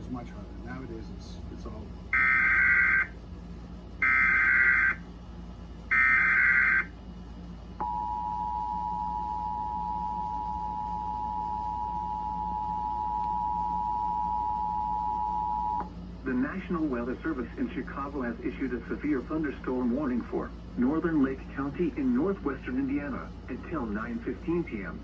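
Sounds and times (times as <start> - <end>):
harsh screeching data tone: 2.2 - 3.1, 4.0 - 5.0, 5.9 - 6.9
steady two-tone attention signal: 7.8 - 15.9.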